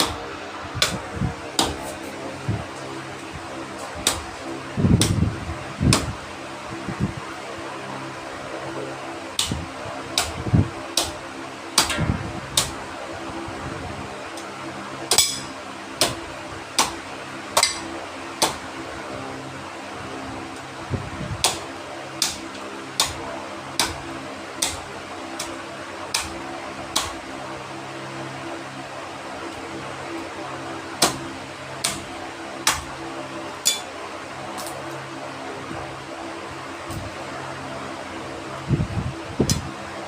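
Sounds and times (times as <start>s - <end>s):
fan humming: 0.0s - 40.0s.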